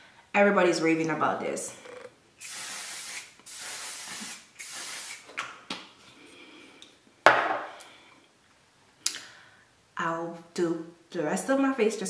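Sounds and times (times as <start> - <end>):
spray misting from pump bottle: 2.4 - 5.3.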